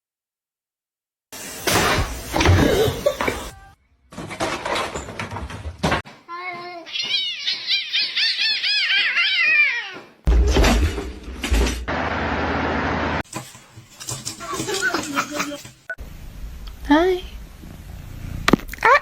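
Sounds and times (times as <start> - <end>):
cat meowing: 6.8 - 10.2
noisy sound: 10.3 - 13.3.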